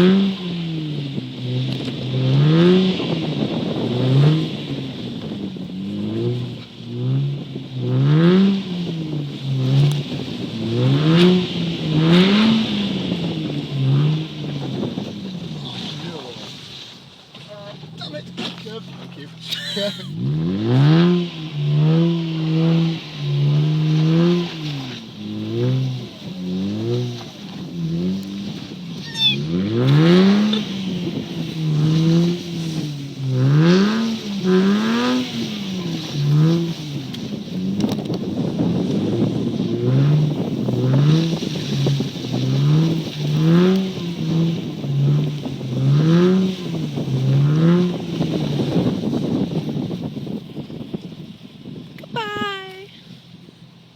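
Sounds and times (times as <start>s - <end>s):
car engine revving: 0.0s - 50.1s
tyre squeal: 29.0s - 29.5s.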